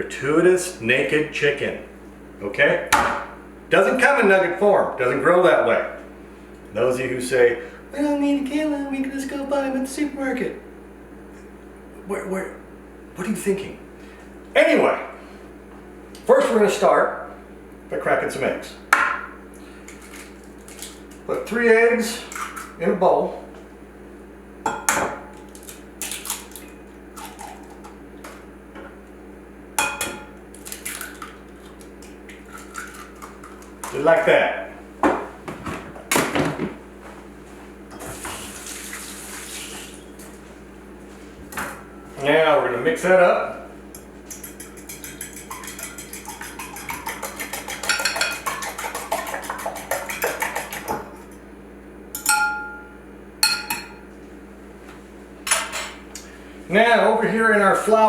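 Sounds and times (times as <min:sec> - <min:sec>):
eggs cracking against bowl: 0:19.8 - 0:21.3, 0:25.3 - 0:28.4, 0:30.4 - 0:34.0, 0:44.0 - 0:51.3
fork tapping bowl rim ringing: 0:44.3 - 0:48.8, 0:52.2 - 0:54.1.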